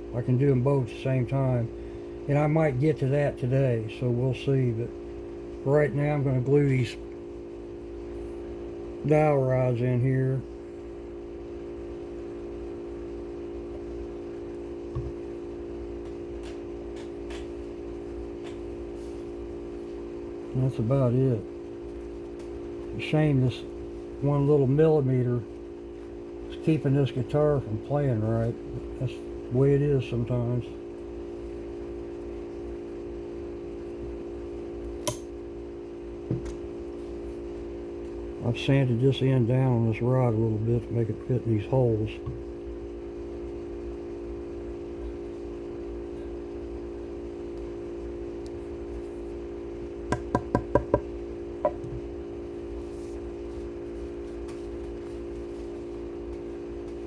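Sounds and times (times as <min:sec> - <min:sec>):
steady room hum: 0:00.0 - 0:57.0
soft knock: 0:50.2 - 0:52.0.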